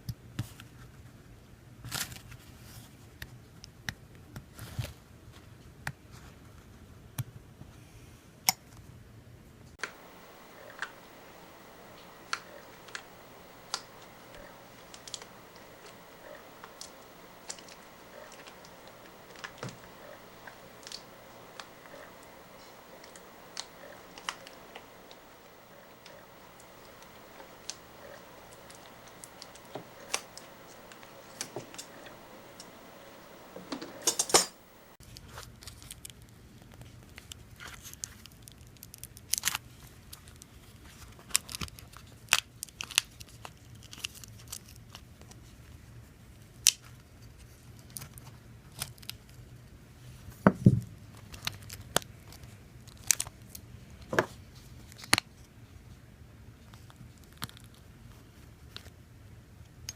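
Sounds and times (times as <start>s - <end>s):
rustling: 9.8s - 35.0s.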